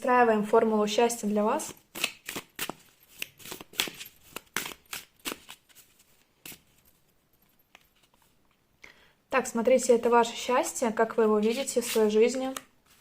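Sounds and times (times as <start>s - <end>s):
cards snapping and sliding: 1.9s - 5.6s.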